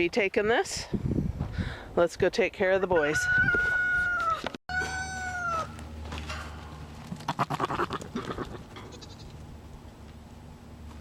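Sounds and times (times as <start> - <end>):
rooster crowing: 3.2 - 5.8
goat bleating: 7.2 - 9.4.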